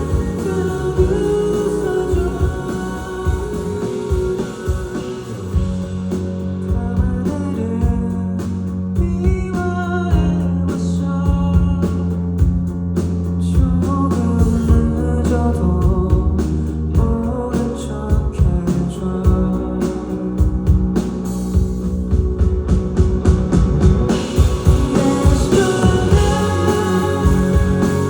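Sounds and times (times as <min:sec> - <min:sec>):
drum beat: 0:00.0 - 0:06.1, 0:21.6 - 0:28.0
guitar: 0:00.0 - 0:28.0
heavy bass: 0:00.0 - 0:28.0.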